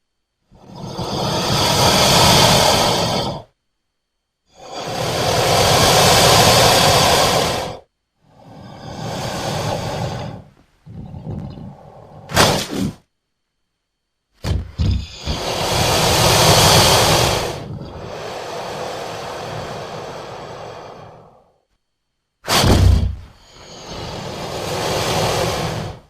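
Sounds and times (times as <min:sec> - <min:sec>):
cartoon whooshes: 0:12.3 - 0:13.0
quick sharp sweep: 0:12.3 - 0:13.0.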